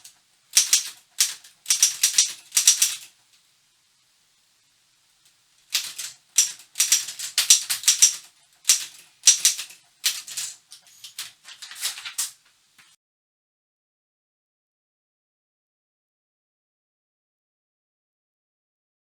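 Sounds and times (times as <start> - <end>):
typewriter typebar clacks: 0.0 - 3.1, 5.7 - 12.4.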